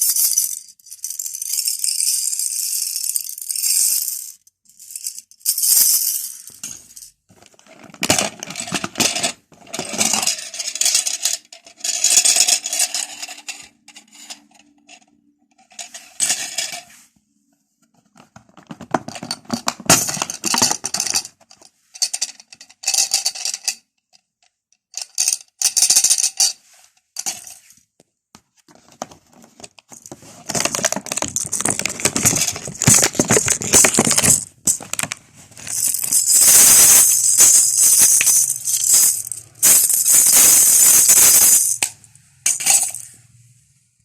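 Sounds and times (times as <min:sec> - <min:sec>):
small hard objects rattling: 0:18.4 - 0:21.4, 0:28.9 - 0:41.9, 0:42.5 - 0:43.1.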